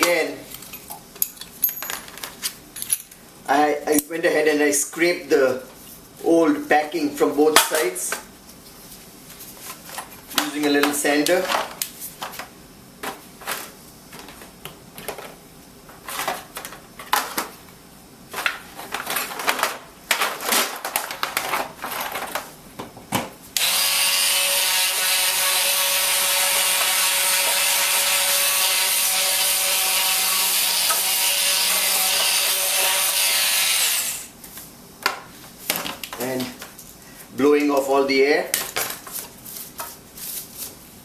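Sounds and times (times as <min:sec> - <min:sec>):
small power sander running: 0:23.6 - 0:34.3.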